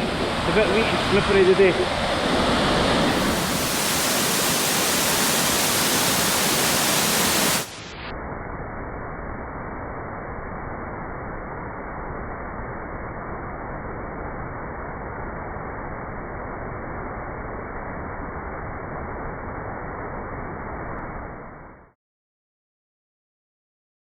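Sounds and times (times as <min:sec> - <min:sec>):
waterfall roaring: 0:00.0 - 0:07.9.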